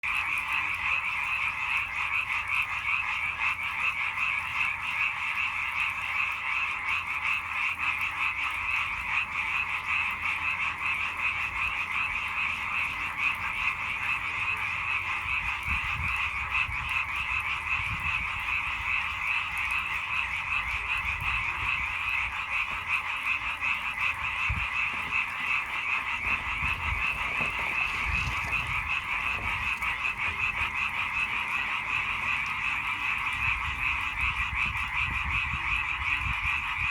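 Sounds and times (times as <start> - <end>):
chorus of frogs croaking: 0.0 - 36.9.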